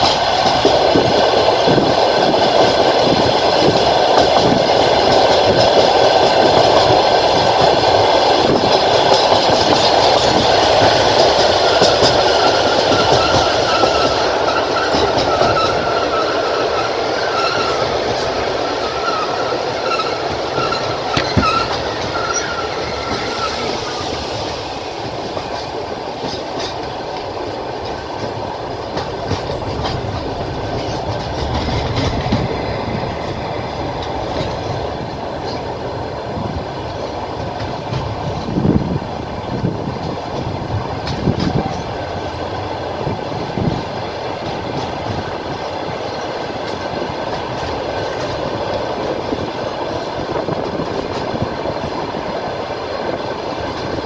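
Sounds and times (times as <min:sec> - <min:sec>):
train wheels rolling rumble: 0:00.0 - 0:54.0
thin wheel squeal: 0:18.9 - 0:24.3
clicks over rail joints: 0:19.9 - 0:23.2.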